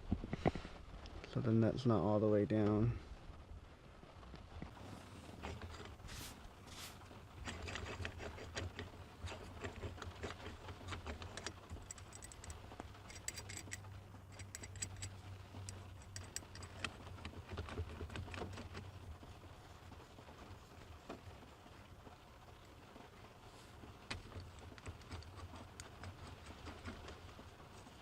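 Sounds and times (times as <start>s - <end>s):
shift knob clicking and rattling: 7.4s - 18.8s, 24.1s - 27.3s.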